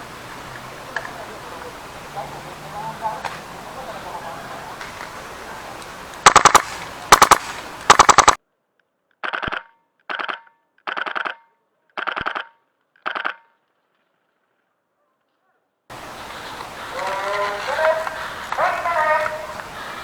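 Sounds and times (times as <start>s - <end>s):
airsoft gun firing bursts: 4.8s - 8.4s.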